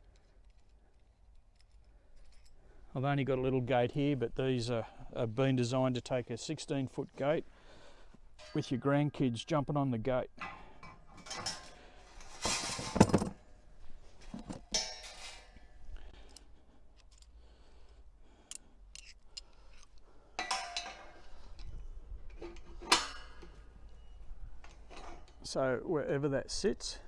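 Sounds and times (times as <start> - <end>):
metal hardware and tools clinking: 8.4 - 9.5, 10.4 - 13.4, 14.2 - 15.8, 18.9 - 25.5.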